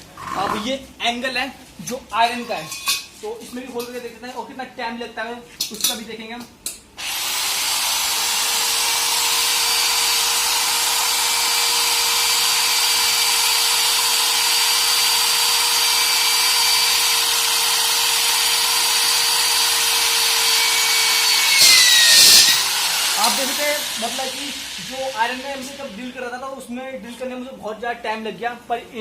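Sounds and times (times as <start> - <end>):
electric drill boring into iron: 7.0 - 26.1.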